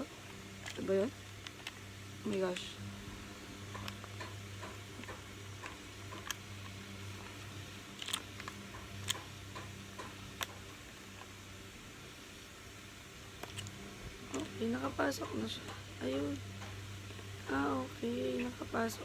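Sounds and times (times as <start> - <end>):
steady low hum: 0.0 - 19.0
plastic parts clicking and tapping: 0.2 - 2.8, 3.6 - 11.4, 13.3 - 17.6.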